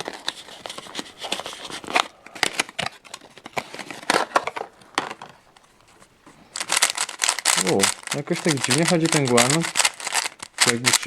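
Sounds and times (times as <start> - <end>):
plastic packaging crinkling: 0.0 - 11.0
small clicks and snaps: 6.5 - 11.0.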